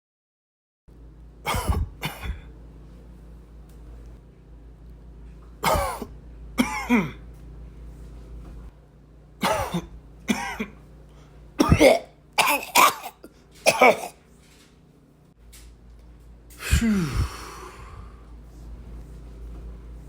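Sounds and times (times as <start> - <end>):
steady low hum: 0.9 - 20.0
person coughing: 1.5 - 2.5, 5.6 - 7.3, 9.4 - 10.8, 11.6 - 14.2, 16.6 - 17.7.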